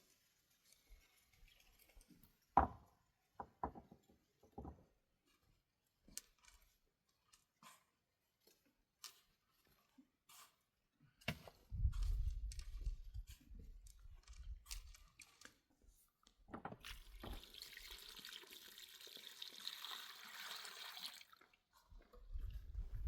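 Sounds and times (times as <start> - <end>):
water pouring: 16.8 - 21.7.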